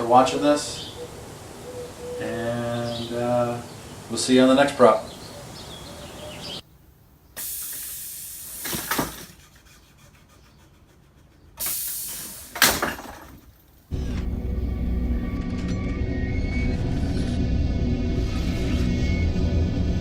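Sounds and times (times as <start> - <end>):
hissing bursts: 7.3 - 10.2, 11.6 - 14.1
music: 14.0 - 20.0.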